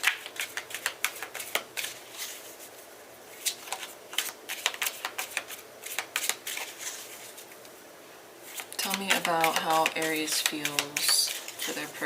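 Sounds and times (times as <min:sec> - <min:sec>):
cards being shuffled: 0:03.4 - 0:07.6, 0:08.5 - 0:11.9.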